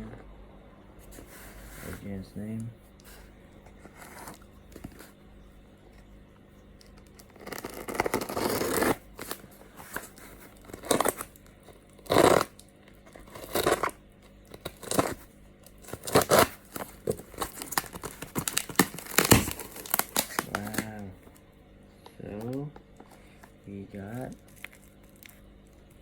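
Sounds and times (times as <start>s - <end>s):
packaging tearing and crinkling: 6.8s - 21.1s, 24.1s - 26.0s.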